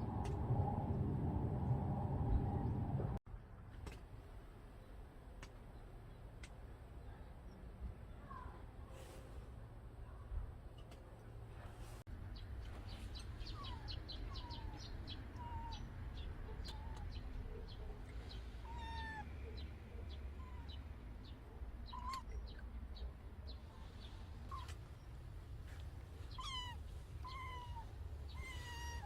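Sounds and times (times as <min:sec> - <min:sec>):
kitten chirping: 0:13.4 - 0:15.8, 0:18.6 - 0:19.3, 0:21.8 - 0:22.5, 0:26.3 - 0:29.0
kitten mewing: 0:26.4 - 0:29.0.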